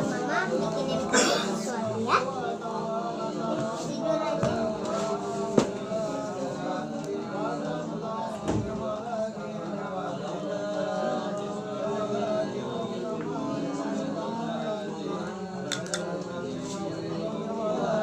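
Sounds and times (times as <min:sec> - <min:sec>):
background music with singing: 0:12.9 - 0:18.0.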